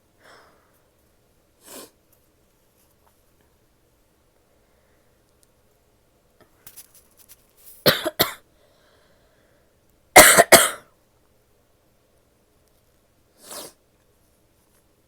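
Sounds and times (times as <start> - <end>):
woman coughing: 7.9 - 8.4, 10.2 - 10.9.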